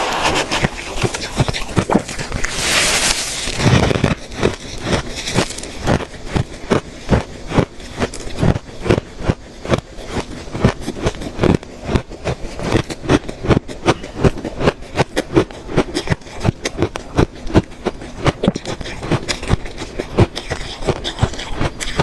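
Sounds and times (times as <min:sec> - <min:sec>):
ice being chewed: 0:00.0 - 0:22.0.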